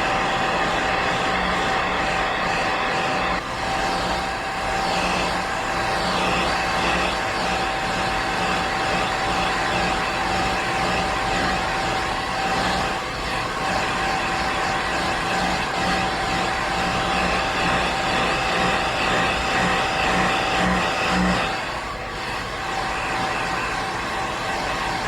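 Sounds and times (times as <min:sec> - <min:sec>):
appliance motor whining: 0:13.8 - 0:23.4.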